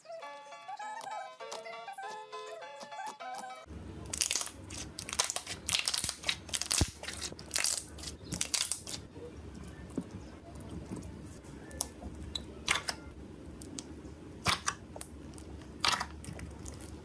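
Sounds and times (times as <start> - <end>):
crunchy slime crackling: 4.0 - 10.0, 13.6 - 17.0.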